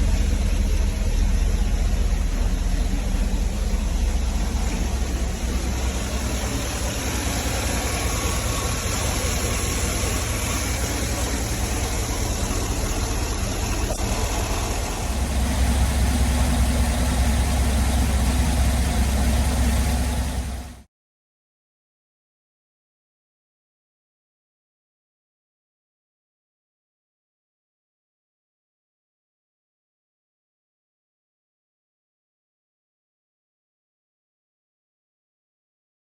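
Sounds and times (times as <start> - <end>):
car engine idling: 0.0 - 20.9.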